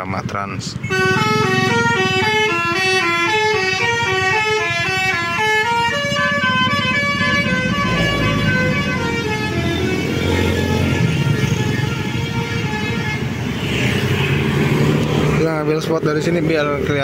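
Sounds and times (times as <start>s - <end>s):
diesel bus engine rumble: 0.0s - 17.0s
bus horn playing a tune: 0.8s - 13.5s.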